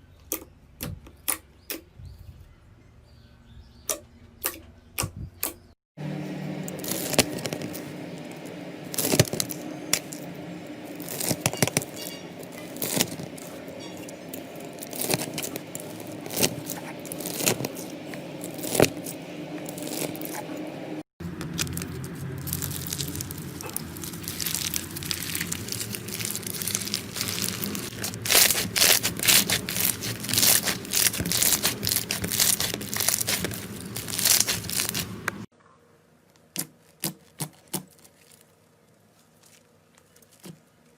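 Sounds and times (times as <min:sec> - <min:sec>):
low steady hum: 0:06.0 - 0:36.9
slime crackling and popping: 0:06.8 - 0:13.5, 0:14.3 - 0:19.1, 0:21.4 - 0:35.5.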